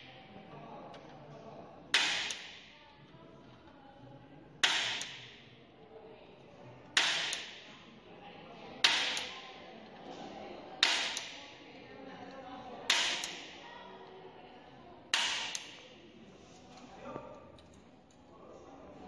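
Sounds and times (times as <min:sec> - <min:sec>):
punch-down tool snapping: 0:01.9 - 0:02.6, 0:04.6 - 0:05.3, 0:07.0 - 0:07.6, 0:08.8 - 0:09.3, 0:10.8 - 0:11.4, 0:12.9 - 0:13.5, 0:15.1 - 0:15.8.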